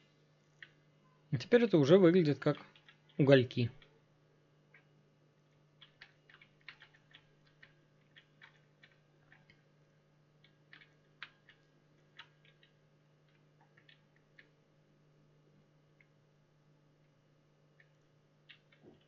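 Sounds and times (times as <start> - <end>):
steady low hum: 0.0 - 19.0
faint small clicks: 0.6 - 1.2, 17.8 - 19.0.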